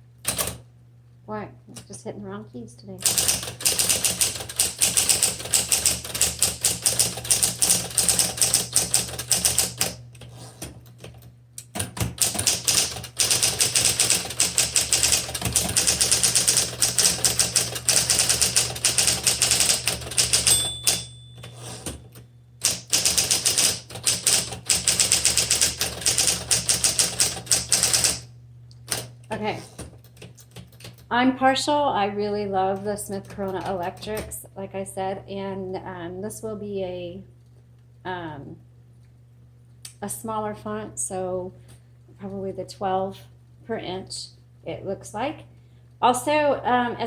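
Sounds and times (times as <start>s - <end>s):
typewriter typing fast: 3.0s - 10.0s, 11.7s - 22.0s, 22.6s - 28.3s
typewriter bell ring: 15.8s - 21.9s, 22.6s - 28.2s
electric motor hum: 21.4s - 30.4s.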